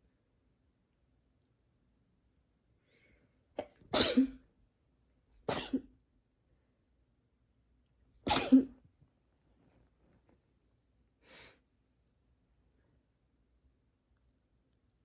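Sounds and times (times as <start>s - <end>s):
person sneezing: 3.6s - 4.4s, 5.5s - 5.9s, 8.3s - 8.8s.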